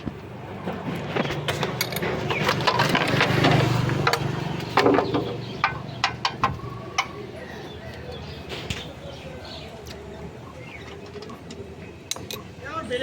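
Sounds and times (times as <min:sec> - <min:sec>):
sharp clicks and knocks: 0:00.0 - 0:07.2, 0:10.8 - 0:12.5.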